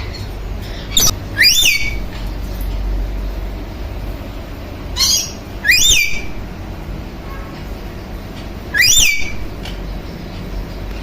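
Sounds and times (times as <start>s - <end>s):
parrot calling: 0.0s - 2.2s, 4.9s - 10.7s.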